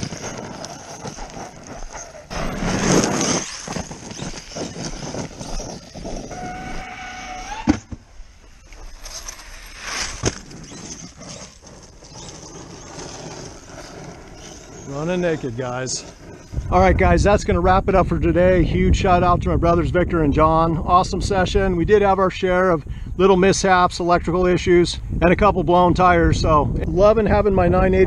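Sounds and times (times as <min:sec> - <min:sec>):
tyre and ground noise: 0:00.0 - 0:19.5
electric motor whine: 0:10.2 - 0:16.6.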